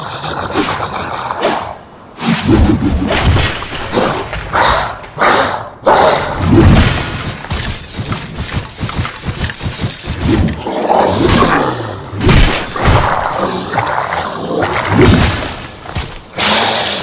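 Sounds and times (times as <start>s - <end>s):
crashes and breaking: 6.5s - 10.6s, 12.2s - 13.4s.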